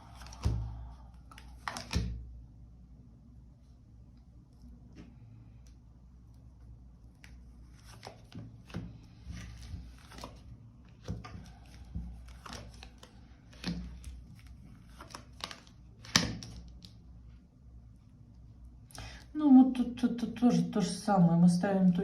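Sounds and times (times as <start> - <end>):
cards being shuffled: 0.0 - 2.2, 7.0 - 17.0.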